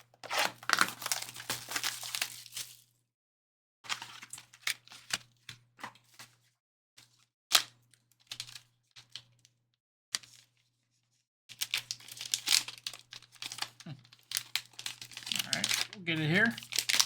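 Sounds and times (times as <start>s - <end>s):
plastic packaging snapping: 0.2s - 2.4s, 11.6s - 16.0s, 16.6s - 17.0s
plastic packaging crinkling: 0.2s - 2.8s, 11.6s - 17.0s.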